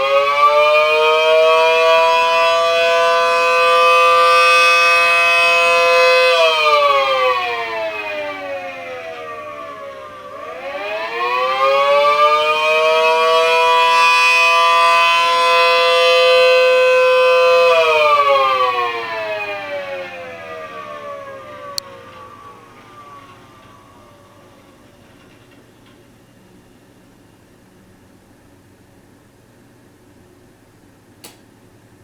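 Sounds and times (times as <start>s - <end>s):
siren sounding two-tone chord: 0.0s - 25.4s
sharp click: 31.2s - 31.5s.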